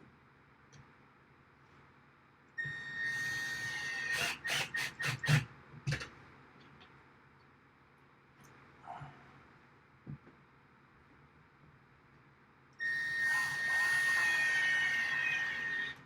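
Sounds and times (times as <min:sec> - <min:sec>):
electric drill whining: 0:03.1 - 0:05.4, 0:13.2 - 0:16.0.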